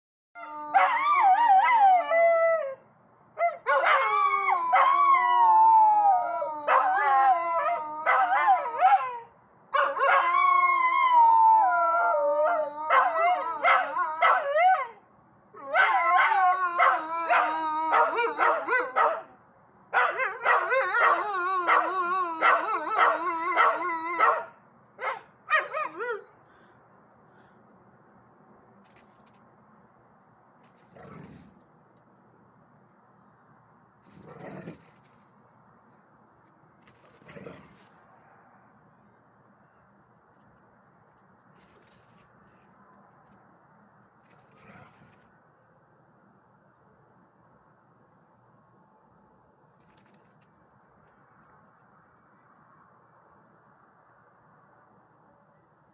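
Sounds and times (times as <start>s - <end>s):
dogs howling together: 0.4s - 2.8s, 3.4s - 15.0s, 15.6s - 19.2s, 20.1s - 24.5s.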